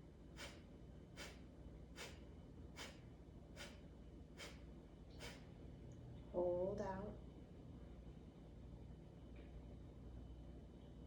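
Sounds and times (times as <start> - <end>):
low steady hum: 0.0 - 11.0
short hissing pulses: 2.0 - 2.2, 2.8 - 3.0, 4.4 - 4.6, 5.2 - 5.4.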